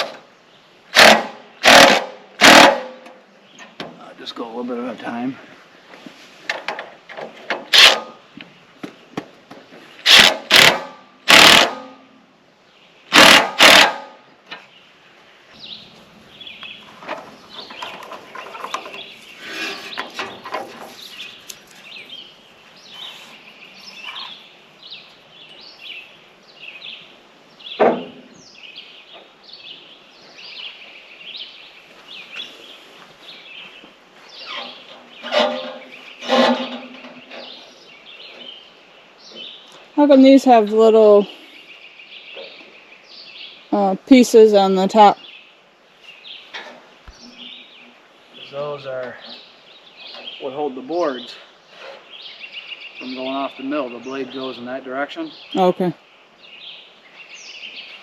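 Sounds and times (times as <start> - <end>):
loud sharp knocks: 1.0 - 3.1, 27.8 - 28.3
small bird chirping: 15.5 - 40.3.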